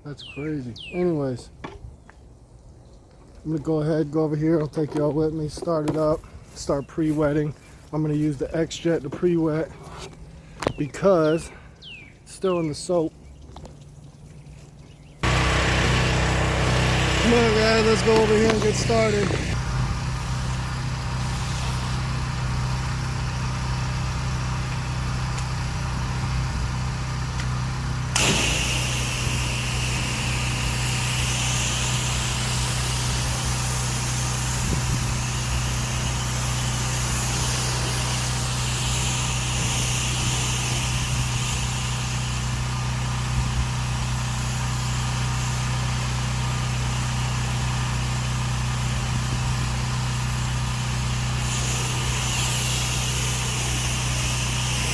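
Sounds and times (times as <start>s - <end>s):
high-pressure water spray hissing: 15.2s - 54.9s
pressure washer engine running: 15.2s - 54.9s.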